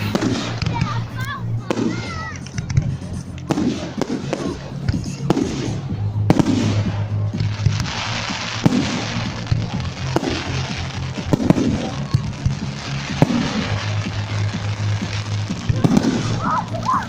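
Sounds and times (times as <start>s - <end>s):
firework crackling: 0.0s - 17.0s
firework shells bursting: 1.8s - 6.9s.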